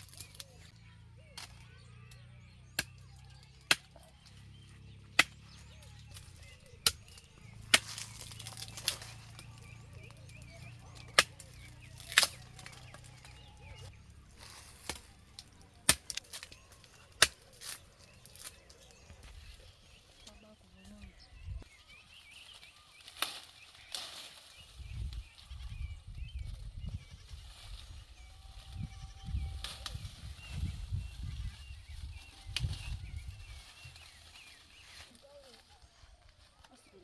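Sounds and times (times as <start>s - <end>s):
sharp chopping strikes: 5.0s - 9.0s.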